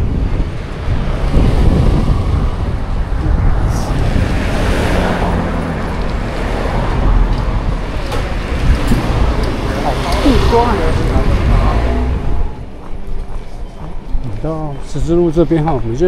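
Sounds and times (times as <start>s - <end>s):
car passing: 0.0s - 14.5s
wind buffeting microphone: 0.0s - 15.5s.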